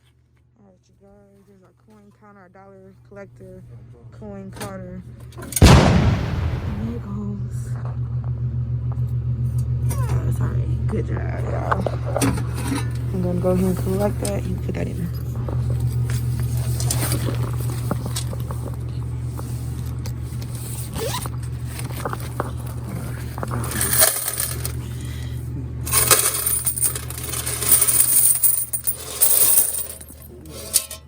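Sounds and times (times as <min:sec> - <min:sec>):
low steady hum: 0:00.0 - 0:31.0
coins clinking and pouring: 0:23.7 - 0:24.8, 0:25.9 - 0:30.3.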